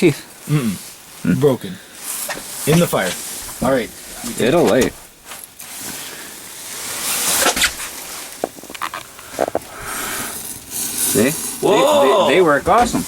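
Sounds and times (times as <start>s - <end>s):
fire crackles: 0.0s - 13.0s
match flaring with hissing rush: 5.3s - 12.7s.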